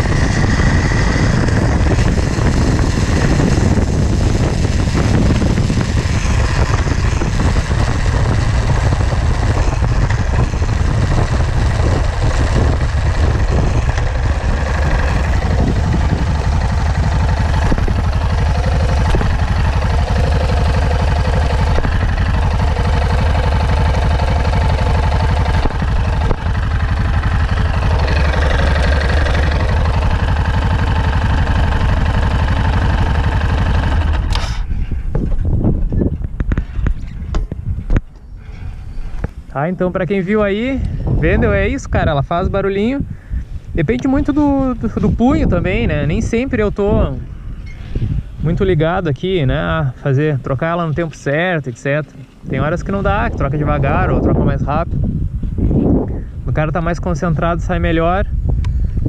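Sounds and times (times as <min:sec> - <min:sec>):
motorcycle engine running: 0:00.0 - 0:59.0
wind buffeting on microphone: 0:00.0 - 0:59.0.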